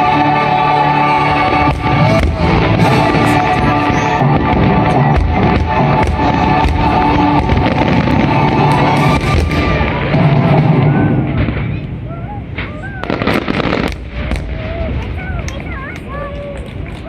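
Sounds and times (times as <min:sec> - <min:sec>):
music playing: 0:00.0 - 0:11.0
fireworks bursting: 0:00.0 - 0:17.0.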